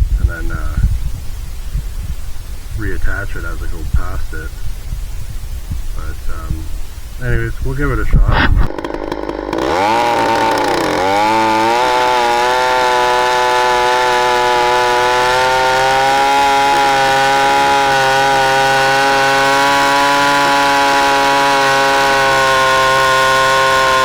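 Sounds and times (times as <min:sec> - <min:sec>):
chainsaw cutting through log: 0:08.2 - 0:24.0.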